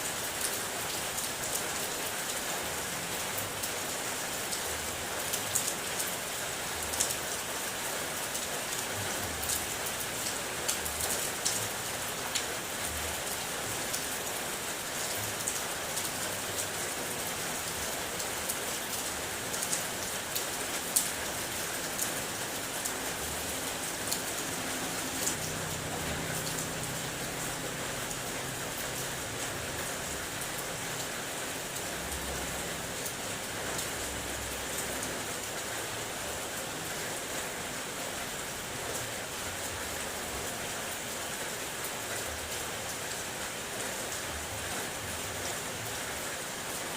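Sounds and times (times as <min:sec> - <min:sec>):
rain hiss: 0:00.0 - 0:46.9.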